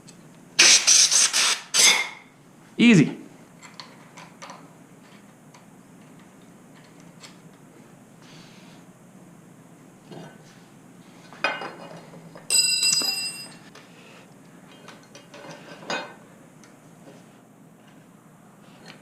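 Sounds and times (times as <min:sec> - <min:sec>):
bright metallic clink ringing: 0:12.5 - 0:13.6.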